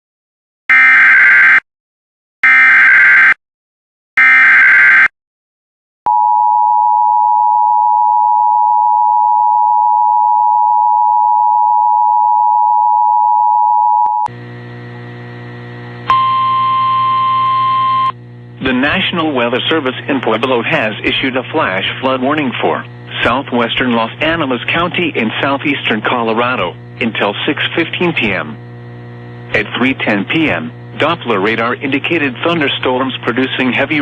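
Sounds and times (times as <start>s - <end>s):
single steady tone: 6.1s - 14.4s, 16.0s - 18.2s
two-tone attention signal: 16.1s - 18.2s.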